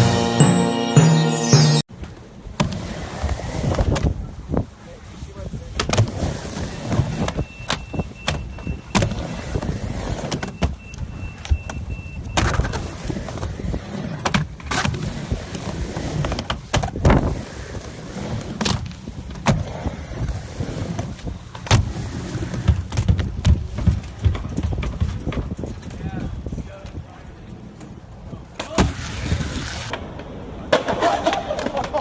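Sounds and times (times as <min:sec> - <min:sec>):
skateboard wheels rolling: 0:02.1 - 0:32.0
skateboard clacks and slaps: 0:05.7 - 0:10.8, 0:11.5 - 0:26.0, 0:27.8 - 0:32.0.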